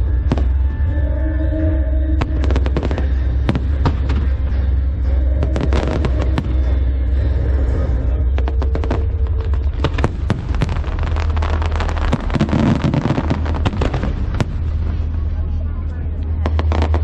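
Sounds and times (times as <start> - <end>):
steady low rumble: 0.0 - 17.0
fireworks bangs: 2.2 - 4.7, 5.4 - 6.8, 8.3 - 15.6, 16.4 - 17.0.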